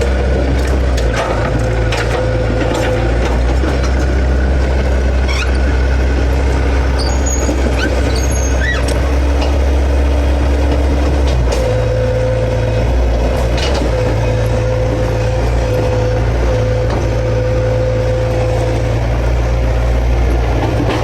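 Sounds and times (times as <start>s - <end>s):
excavator diesel engine humming: 0.0s - 21.0s
brief squeaks and clicks: 7.0s - 9.0s.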